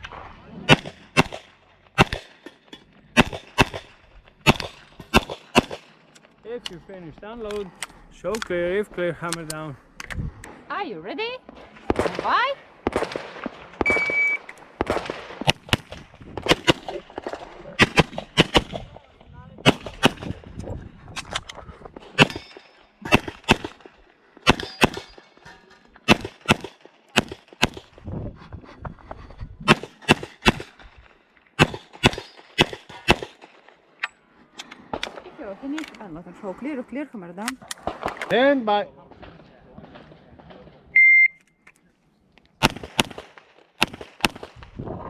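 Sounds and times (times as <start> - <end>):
rapid pistol shots: 0.7 - 2.4, 3.1 - 6.0, 11.7 - 19.0, 19.6 - 20.5, 22.0 - 25.2, 26.0 - 28.0, 29.6 - 30.9, 31.6 - 33.8, 42.6 - 44.6
shot timer beep: 13.8 - 14.5, 41.0 - 41.4.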